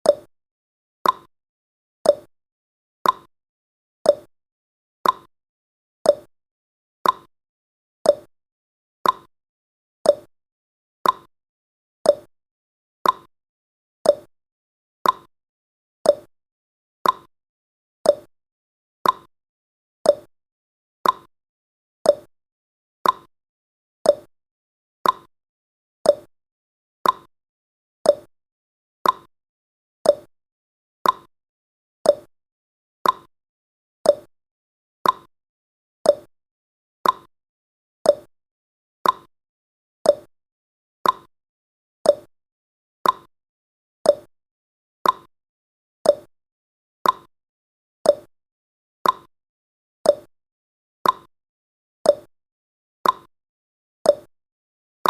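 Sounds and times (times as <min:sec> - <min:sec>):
clock ticking: 0:17.0 - 0:17.3, 0:25.0 - 0:25.3, 0:33.0 - 0:33.3, 0:35.0 - 0:35.3, 0:37.0 - 0:37.3, 0:41.0 - 0:41.3, 0:43.0 - 0:43.3, 0:45.0 - 0:45.3, 0:47.0 - 0:47.3, 0:49.0 - 0:49.3, 0:51.0 - 0:51.3.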